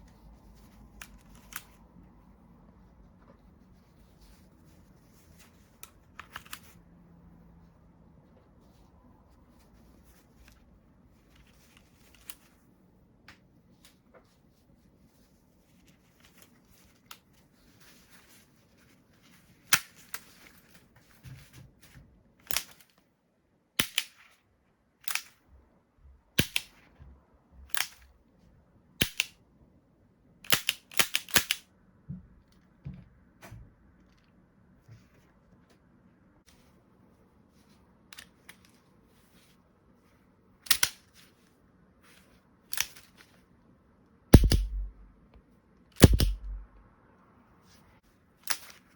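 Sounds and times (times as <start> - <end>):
revolver dry-fire metallic clicks: 44.4 - 45.0, 46.0 - 46.8
faint handling clicks: 46.0 - 46.8.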